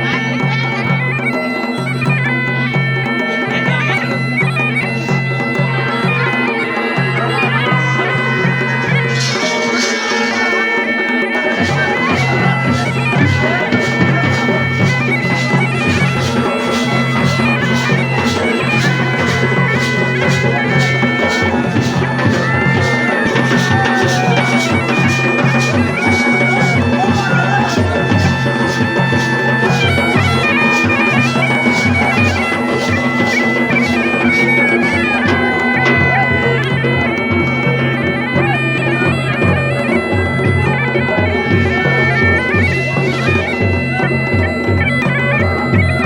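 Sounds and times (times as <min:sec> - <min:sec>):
bagpipe melody over drone: 0:00.0 - 0:46.0
drum beating: 0:00.0 - 0:46.0.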